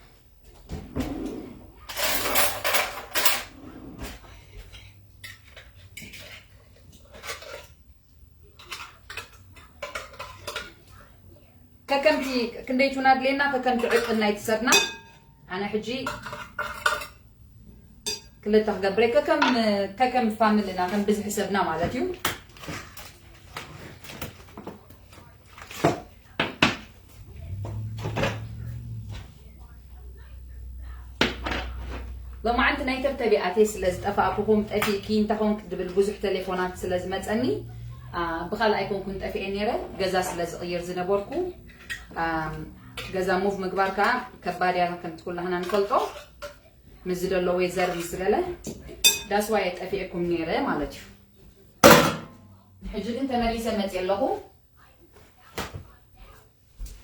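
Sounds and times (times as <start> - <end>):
low steady hum: 0.0 - 55.4
dishes and utensils clattering: 0.7 - 7.8, 8.4 - 11.1, 13.5 - 17.3, 18.0 - 20.1, 32.8 - 37.9, 38.9 - 49.9
utensils and dishes clicking: 49.0 - 49.4.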